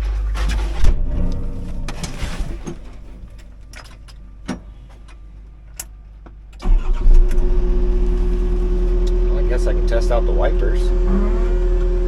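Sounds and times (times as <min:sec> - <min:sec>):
diesel engine cranking and running: 0:06.5 - 0:12.0.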